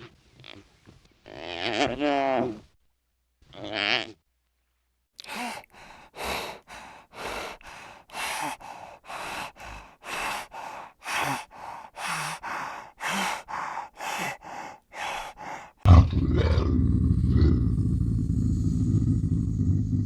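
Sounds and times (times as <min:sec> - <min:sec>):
heavy rhythmic breathing: 0:05.2 - 0:15.9.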